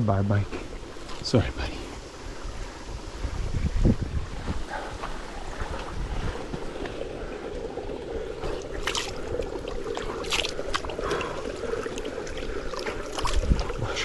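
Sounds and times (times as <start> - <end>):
water sloshing and splashing: 5.1 - 14.0.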